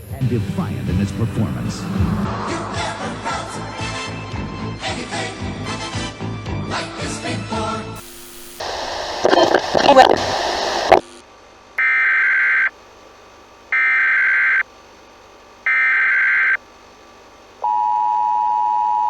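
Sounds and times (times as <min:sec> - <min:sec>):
programme audio: 0:00.0 - 0:05.2.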